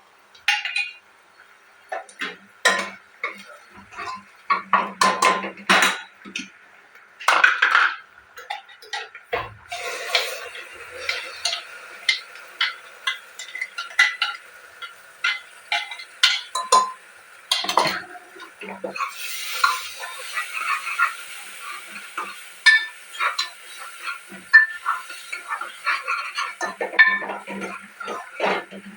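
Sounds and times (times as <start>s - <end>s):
light frying sizzle: 0.0s - 28.9s
spatula scraping a pan: 9.7s - 28.9s.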